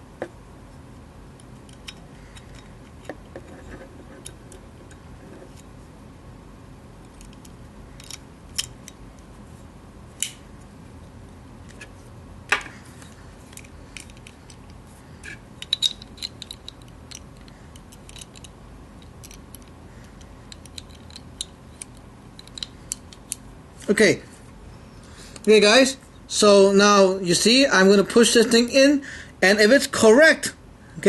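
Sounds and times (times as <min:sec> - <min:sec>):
small metal parts clicking and tapping: 0:01.4 - 0:05.6, 0:07.0 - 0:09.0, 0:12.5 - 0:23.4.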